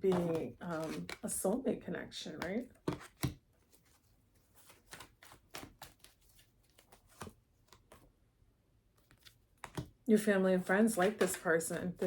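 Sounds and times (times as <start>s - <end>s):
cards tapping and rustling: 0.0s - 1.4s, 2.4s - 8.1s, 9.0s - 10.0s, 11.0s - 12.0s.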